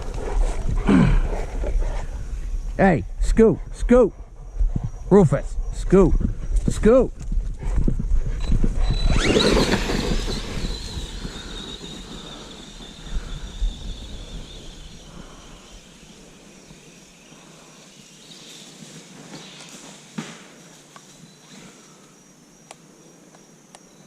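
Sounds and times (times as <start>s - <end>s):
electric motor whining: 8.4s - 16.3s.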